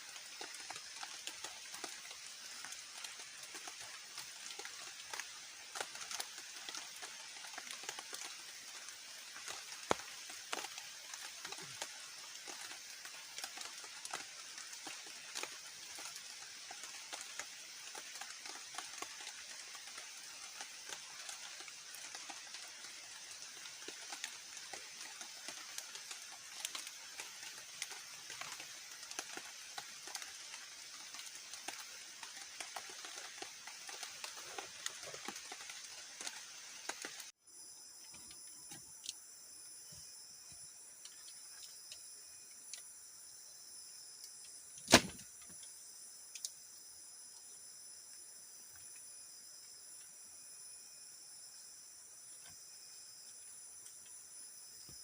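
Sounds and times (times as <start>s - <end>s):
rain dripping and pattering: 0.0s - 37.4s, 40.4s - 43.2s
insects droning: 0.0s - 55.0s
sharp click: 44.8s - 45.5s.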